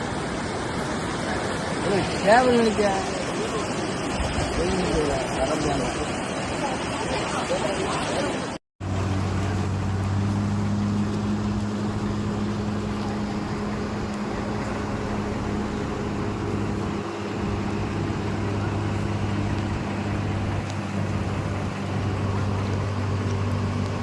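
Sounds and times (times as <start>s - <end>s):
engine humming: 8.8s - 24.0s
rushing noise: 8.8s - 24.0s.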